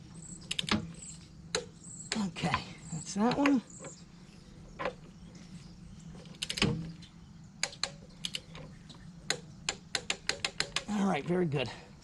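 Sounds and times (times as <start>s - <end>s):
faint steady hum: 0.0s - 12.0s
metallic clicks of hand tools: 9.3s - 10.9s.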